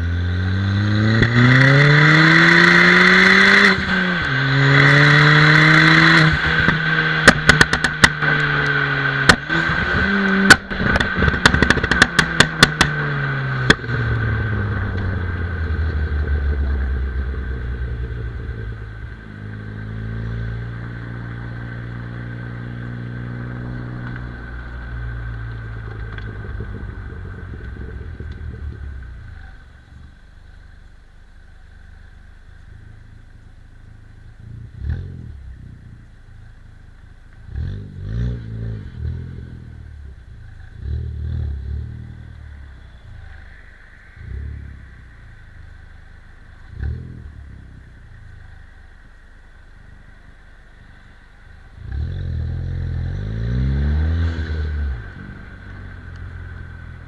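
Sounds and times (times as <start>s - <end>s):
car engine and exhaust revving: 0.0s - 57.0s
exhaust pops and bangs: 5.2s - 19.1s, 23.2s - 30.1s.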